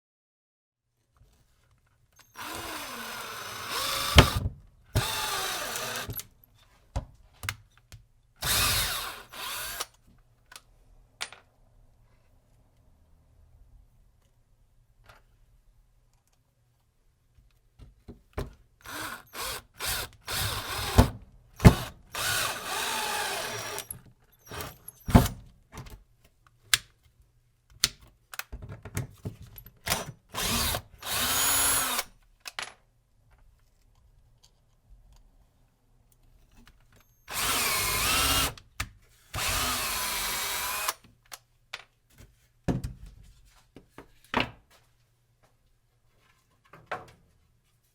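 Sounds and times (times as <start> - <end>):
cordless drill driving screws: 2.2 - 6.2, 8.4 - 10.0, 18.8 - 25.3, 29.9 - 32.1, 37.3 - 38.6, 39.4 - 41.0.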